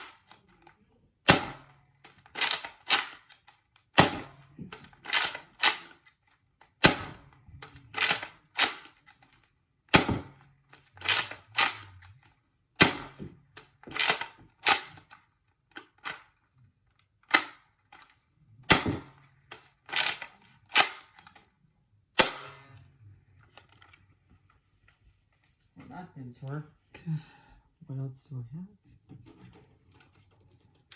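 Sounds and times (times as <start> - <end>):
toy blaster clacks: 0.0 - 21.5.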